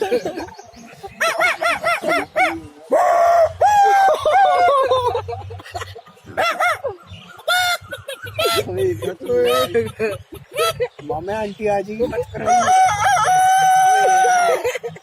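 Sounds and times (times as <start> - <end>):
man imitating bird calls: 5.7 - 14.5.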